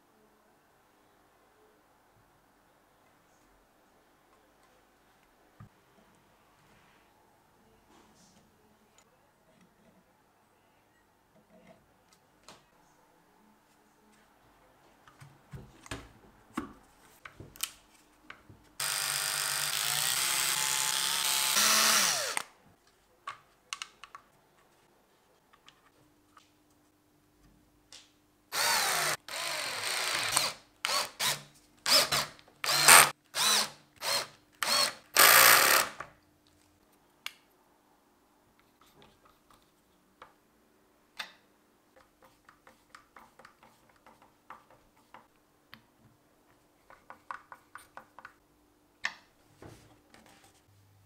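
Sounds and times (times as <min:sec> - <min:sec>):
cordless drill running: 0:18.8 - 0:22.5, 0:28.5 - 0:36.0
faint clicks and taps: 0:41.2 - 0:48.4.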